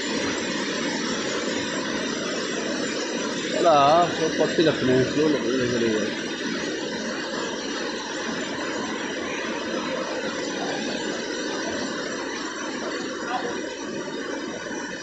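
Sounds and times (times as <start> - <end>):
waterfall pouring into pool: 0.0 - 15.0.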